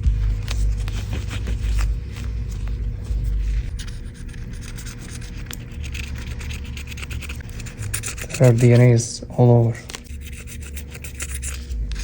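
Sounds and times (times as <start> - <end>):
scratchy scraping strokes: 0.0 - 9.2, 10.0 - 12.0
steady low hum: 0.0 - 12.0.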